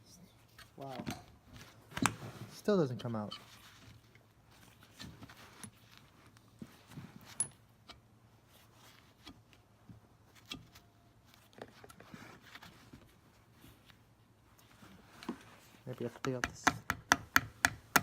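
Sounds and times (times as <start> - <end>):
metal clicks of tools and parts: 7.3 - 8.0.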